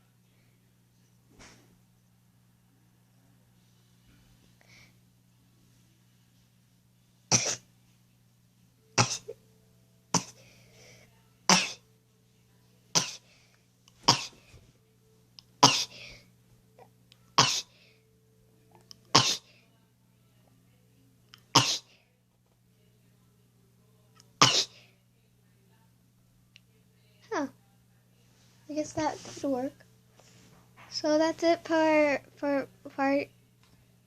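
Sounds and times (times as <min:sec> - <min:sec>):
person sneezing: 0:07.3 - 0:07.6, 0:09.0 - 0:09.4, 0:14.0 - 0:14.4, 0:15.6 - 0:16.2, 0:17.4 - 0:17.8, 0:19.1 - 0:19.5, 0:21.5 - 0:21.9, 0:24.4 - 0:24.8.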